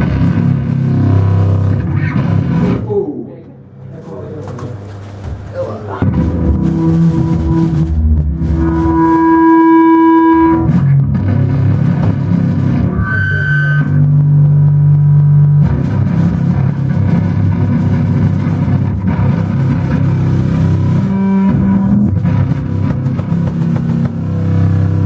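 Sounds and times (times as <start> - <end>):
droning electric guitar and bass: 0.0 - 3.9, 5.9 - 25.0
dense low rumble: 5.9 - 25.0.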